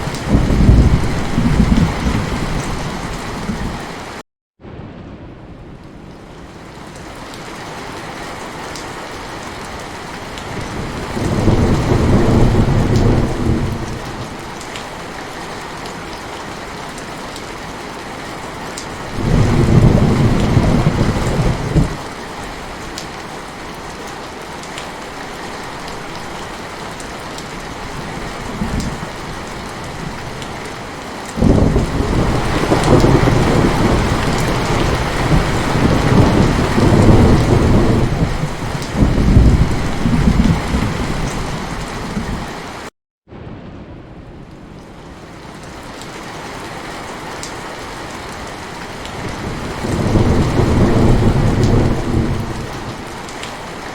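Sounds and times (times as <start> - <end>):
rumbling thunder: 0.0 - 3.9, 10.5 - 14.4, 19.1 - 22.0, 31.4 - 42.5, 49.2 - 53.0
heavy rain falling: 0.0 - 53.9.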